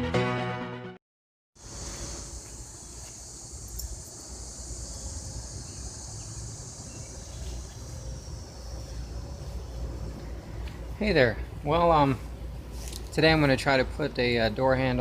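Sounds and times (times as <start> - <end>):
insects chirring: 1.6 - 11.2
low outdoor rumble: 1.6 - 15.0.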